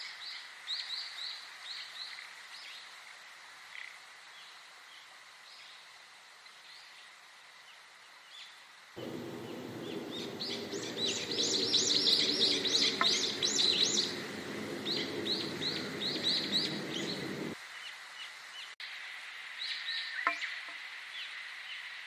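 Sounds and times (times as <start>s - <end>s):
songbirds chirping: 8.4s - 18.7s
low background rumble: 9.0s - 17.6s.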